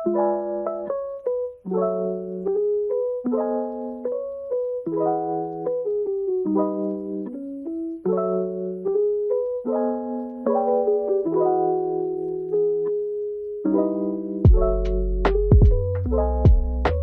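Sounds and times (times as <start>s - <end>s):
soft lo-fi piano music: 0.0s - 17.0s.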